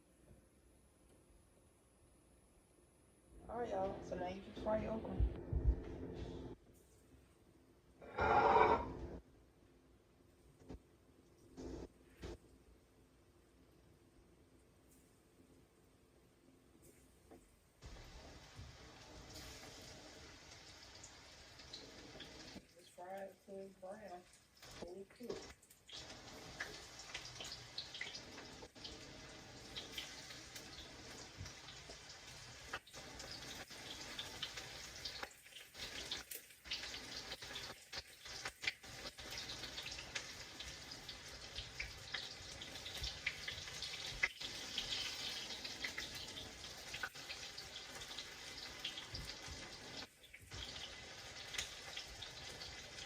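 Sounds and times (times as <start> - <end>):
okra frying in oil: 8.0 - 9.2, 17.8 - 53.0.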